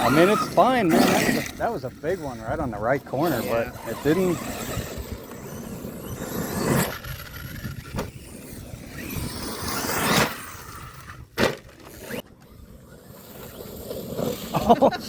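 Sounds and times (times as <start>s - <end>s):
electric rc trucks driving on dirt: 0.0s - 15.0s
sharp knocks of landings: 4.3s - 12.2s.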